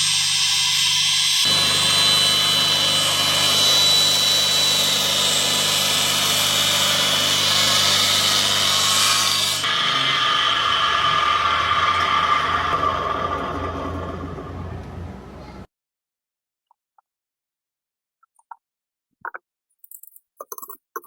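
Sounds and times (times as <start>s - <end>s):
rough full machine noise: 1.2s - 15.7s.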